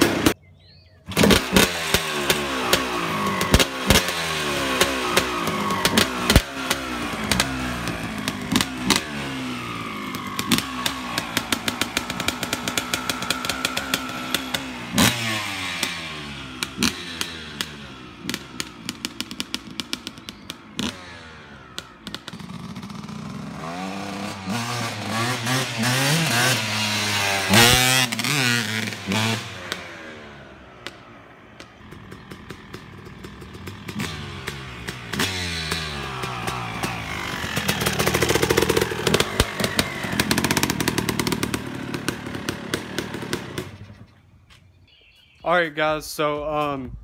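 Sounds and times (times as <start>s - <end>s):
two-stroke engine revving: 0.0s - 0.4s, 1.1s - 44.2s
exhaust pops and crackles: 1.1s - 4.2s, 4.8s - 9.1s, 10.0s - 15.9s, 16.5s - 21.0s, 21.7s - 23.1s, 30.8s - 44.2s.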